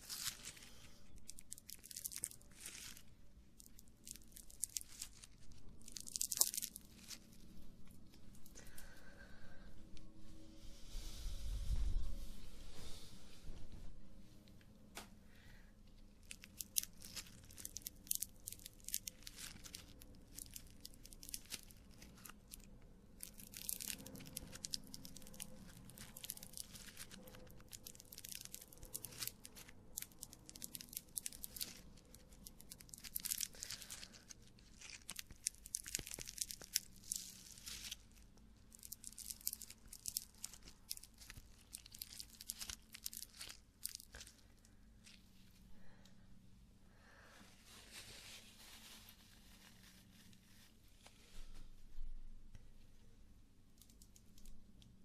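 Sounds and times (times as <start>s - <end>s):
clay crackling and crunching: 0.0s - 10.1s, 14.9s - 46.5s.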